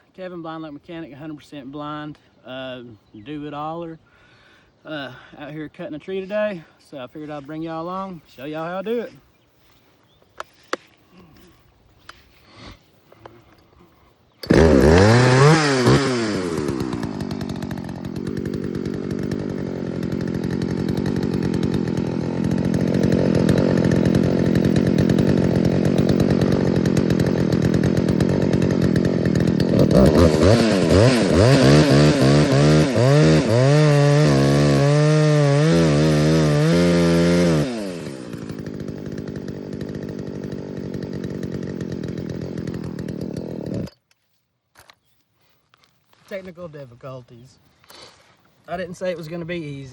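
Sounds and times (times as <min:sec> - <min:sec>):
chainsaw revving: 0:14.4 - 0:44.0.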